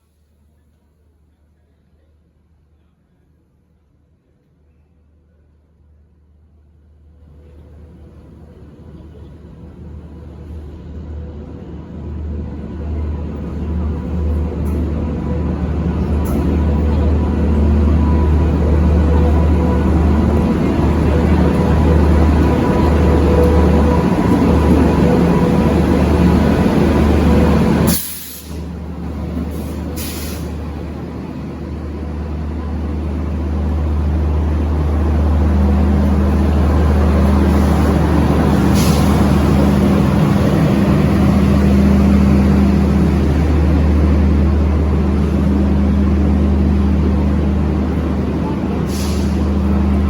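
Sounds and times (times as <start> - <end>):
train rumble and hum: 0.0 - 50.0
air brakes hissing: 27.5 - 30.7, 37.5 - 40.2, 48.8 - 49.7.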